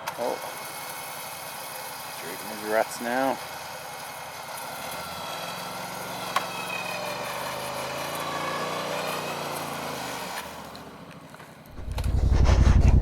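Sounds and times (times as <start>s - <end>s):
vehicle engine revving: 4.5s - 13.0s.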